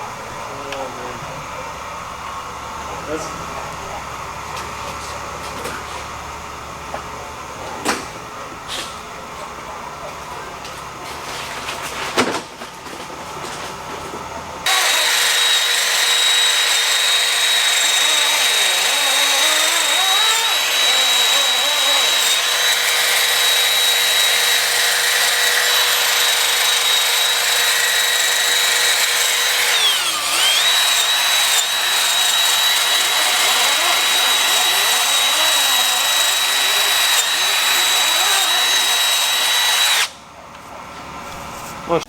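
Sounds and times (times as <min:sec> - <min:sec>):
power tool whining: 0:14.6 - 0:40.2.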